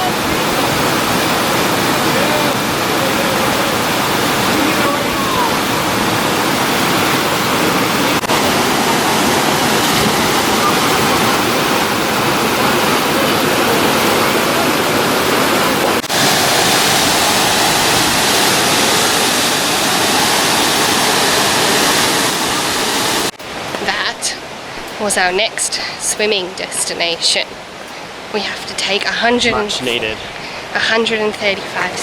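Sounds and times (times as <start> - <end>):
waterfall rushing: 0.0 - 32.0.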